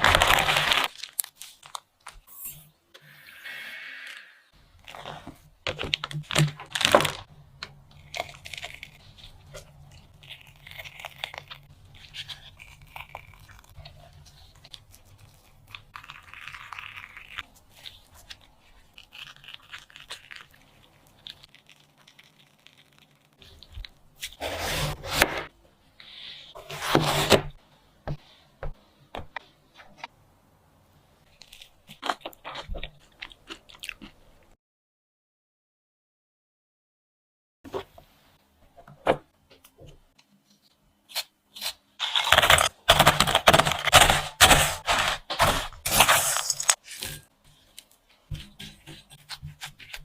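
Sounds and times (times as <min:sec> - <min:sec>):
food crunching and tearing: 0:00.0 - 0:02.2, 0:07.9 - 0:24.4, 0:31.3 - 0:34.2, 0:41.1 - 0:47.2.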